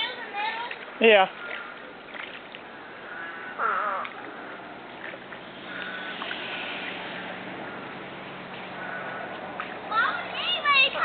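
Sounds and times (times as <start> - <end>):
faint outdoor background: 0.0 - 11.0
crow cawing: 3.0 - 4.3, 5.6 - 6.4, 8.8 - 9.4.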